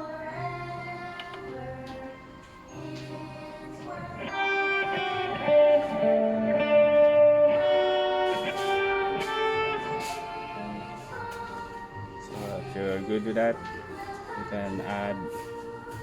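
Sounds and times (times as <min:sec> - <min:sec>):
electric guitar single notes: 0:04.2 - 0:11.0.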